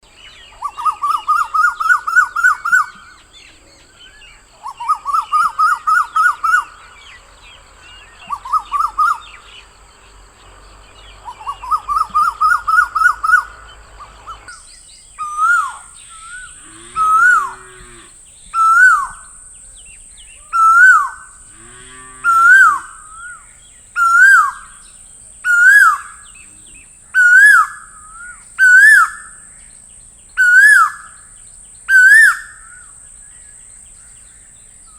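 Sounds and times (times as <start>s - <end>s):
faint low hooting: 6.4s - 25.4s, 26.0s - 28.5s
koel calling: 11.3s - 19.3s, 20.4s - 21.4s, 22.2s - 24.8s.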